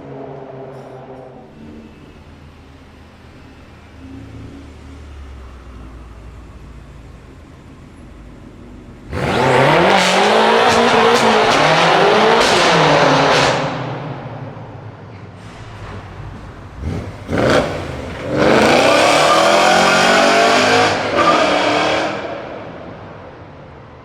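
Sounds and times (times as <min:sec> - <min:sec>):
car engine revving and accelerating: 0:09.0 - 0:14.8, 0:15.6 - 0:23.2.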